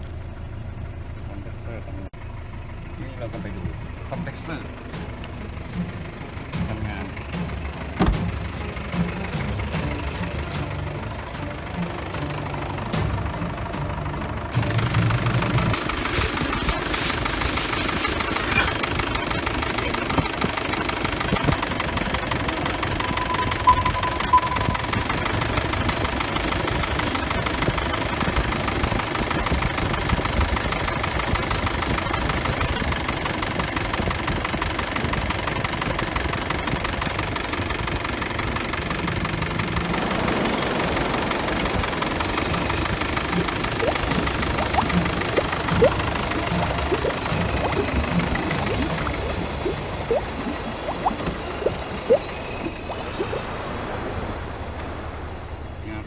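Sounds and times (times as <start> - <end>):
pickup engine idling: 0.0 - 23.8, 24.7 - 56.0.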